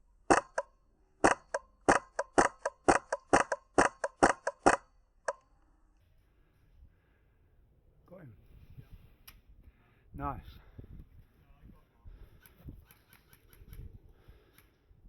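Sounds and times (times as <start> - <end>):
airsoft rifle firing sharp pops: 0.3 - 5.4.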